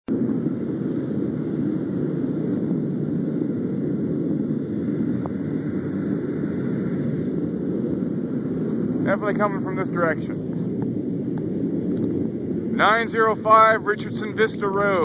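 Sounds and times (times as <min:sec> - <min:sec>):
low steady rumble: 0:00.1 - 0:15.0.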